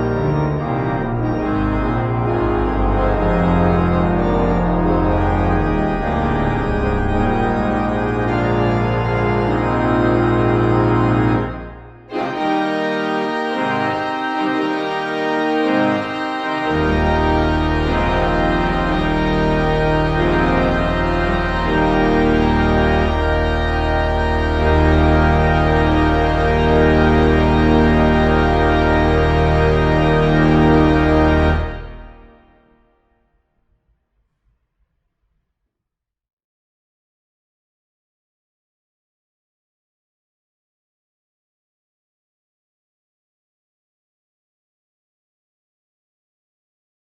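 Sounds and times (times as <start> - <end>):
deep organ pedal bass: 0.0 - 32.4
church organ chords: 0.0 - 32.6.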